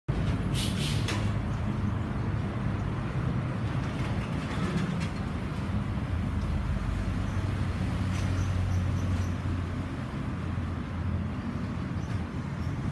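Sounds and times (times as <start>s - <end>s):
short hissing sounds: 0.5s - 1.3s.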